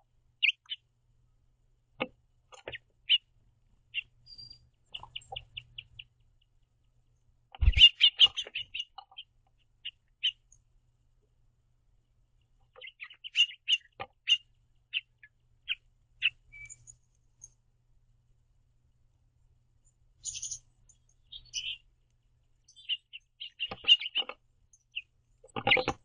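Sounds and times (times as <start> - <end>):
finches chirping: 0.4 - 0.8, 2.5 - 3.3, 3.9 - 6.4, 7.6 - 10.6, 12.7 - 17.5, 20.2 - 21.9, 22.6 - 26.0.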